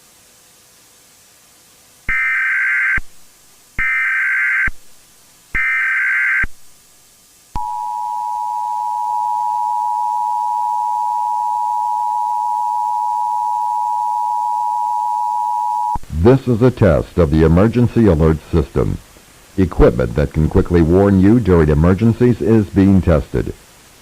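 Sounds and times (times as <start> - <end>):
data tone bursts: 2.1 - 3.0, 3.8 - 4.7, 5.6 - 6.5, 7.6 - 16.0
two-tone attention signal: 7.6 - 16.0.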